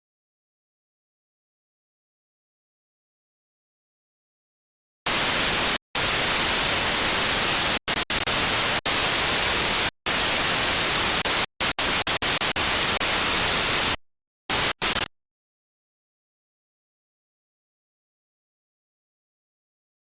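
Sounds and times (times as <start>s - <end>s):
harsh static hiss: 5.1s - 15.1s.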